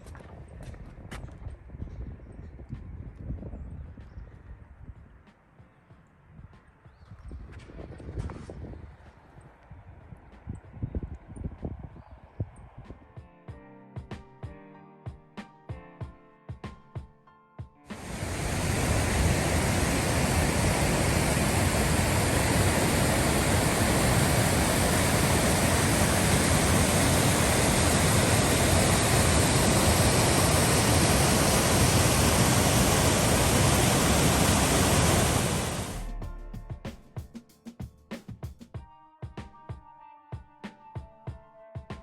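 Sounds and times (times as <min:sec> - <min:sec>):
waterfall roaring: 0:18.0 - 0:36.1.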